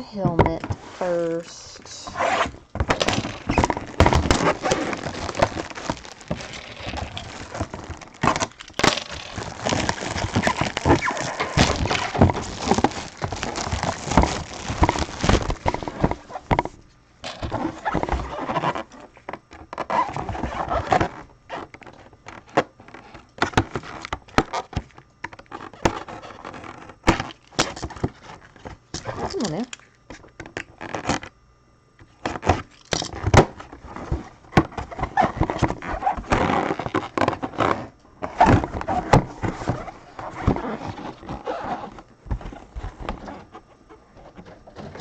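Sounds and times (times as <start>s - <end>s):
plastic wrap crinkling and tearing: 2.1s - 16.6s, 32.3s - 43.6s, 44.2s - 45.0s
sharp packaging clicks: 2.2s - 16.6s.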